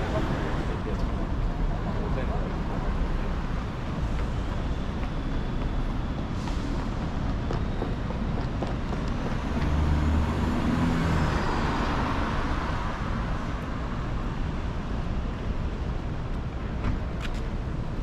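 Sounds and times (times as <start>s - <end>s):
road traffic noise: 0.0s - 18.0s.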